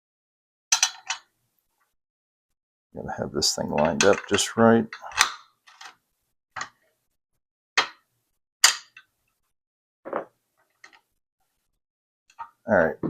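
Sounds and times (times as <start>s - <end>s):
metal clicks and knocks of safe lock: 0.7s - 1.3s.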